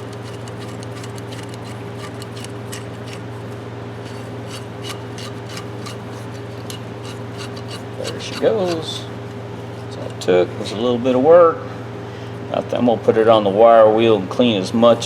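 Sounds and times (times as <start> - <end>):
rusty wrench metallic clicks and scrapes: 0.0 - 10.7.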